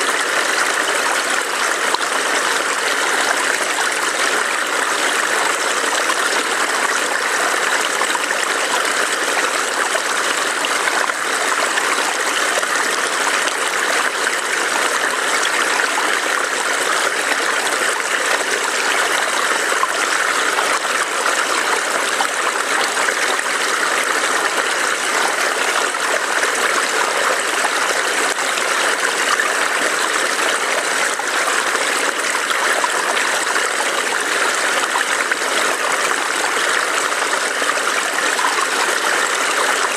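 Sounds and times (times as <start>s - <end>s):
stream burbling over rocks: 0.0s - 39.9s.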